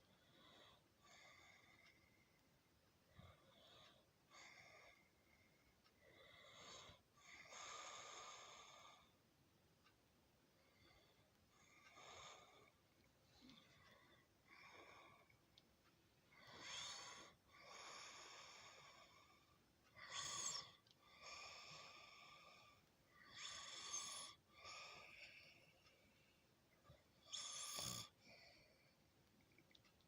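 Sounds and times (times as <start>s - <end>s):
person snoring softly: 6.1s - 9.1s, 16.4s - 25.8s, 27.2s - 28.7s.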